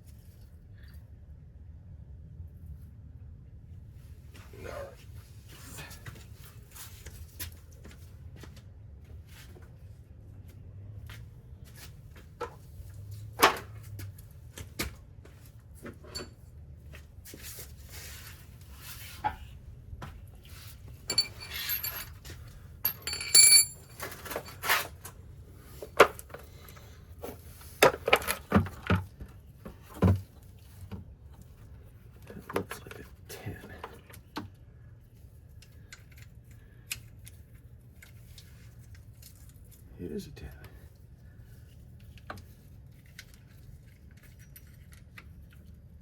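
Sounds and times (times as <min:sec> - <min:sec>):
metal hand tools clinking: 0:21.1 - 0:22.2, 0:22.8 - 0:24.5.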